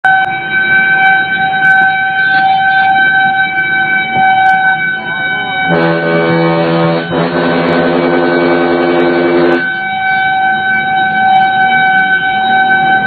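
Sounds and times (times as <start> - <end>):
high-pitched steady warning horn: 0.1 - 13.0
deep air horn blast: 5.6 - 9.7.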